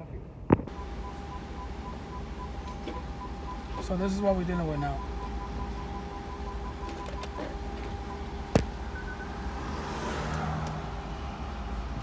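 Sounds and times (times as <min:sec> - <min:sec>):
car engine running: 0:00.7 - 0:09.7.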